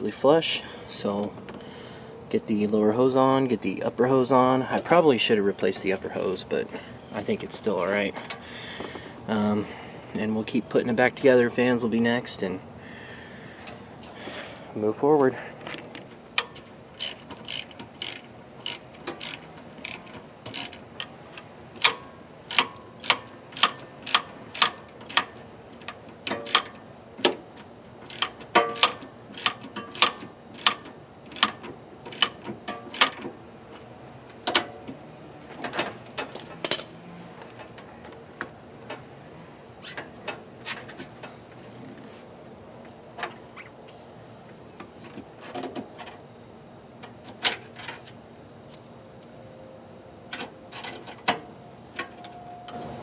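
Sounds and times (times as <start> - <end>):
hand tools clicking on metal: 16.3 - 21.1, 21.8 - 27.4, 28.0 - 33.2.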